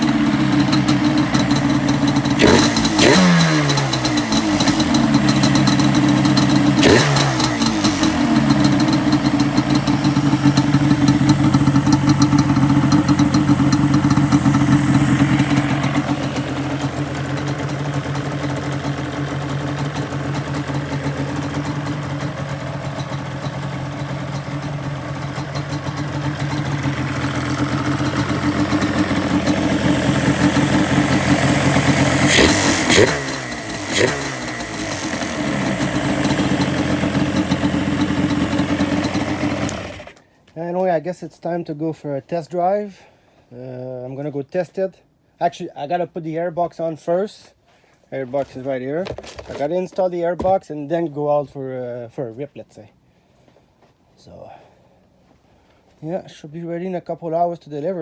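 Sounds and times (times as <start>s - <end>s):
two-stroke engine revving and idling: 0.0s - 40.2s.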